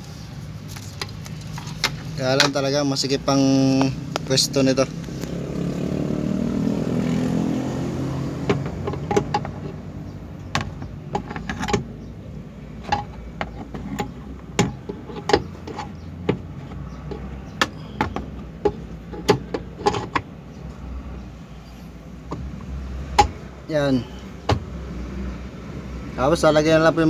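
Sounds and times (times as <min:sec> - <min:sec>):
sharp metal clicks and knocks: 0:08.4 - 0:12.2, 0:12.8 - 0:20.3.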